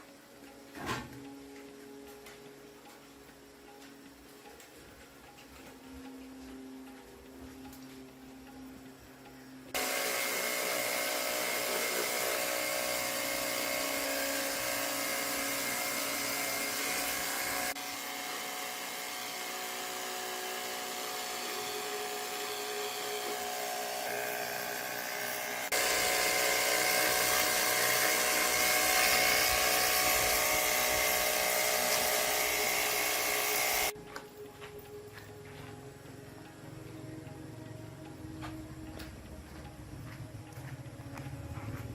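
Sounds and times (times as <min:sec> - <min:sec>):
ticking background music: 0:00.0 - 0:09.8, 0:12.3 - 0:41.9
power tool whining: 0:09.7 - 0:33.9.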